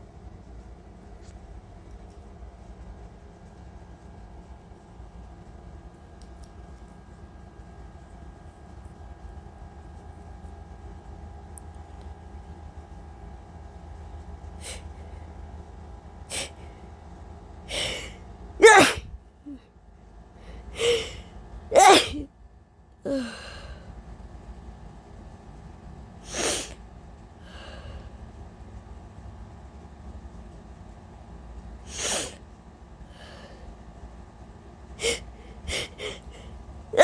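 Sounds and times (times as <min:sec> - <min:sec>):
woman sneezing: 0:16.3 - 0:16.6, 0:17.7 - 0:19.1, 0:20.8 - 0:22.3, 0:26.3 - 0:26.7, 0:31.9 - 0:32.4, 0:35.0 - 0:36.4
catches of breath: 0:16.3 - 0:16.8, 0:17.7 - 0:19.1, 0:20.3 - 0:22.2, 0:23.1 - 0:24.0, 0:26.2 - 0:26.8, 0:27.4 - 0:28.2, 0:31.9 - 0:32.4, 0:33.0 - 0:33.8, 0:35.0 - 0:37.0.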